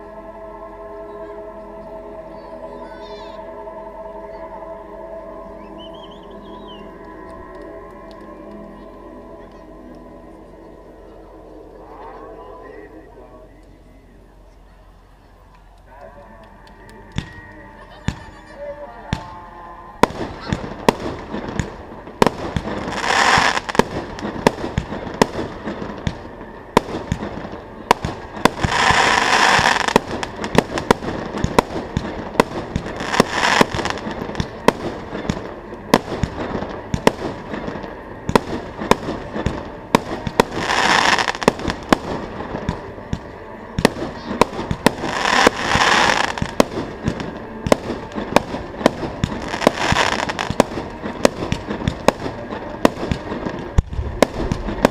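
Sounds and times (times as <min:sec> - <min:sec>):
fireworks banging: 0:20.0 - 0:54.9
fireworks hissing and crackling: 0:20.0 - 0:54.9.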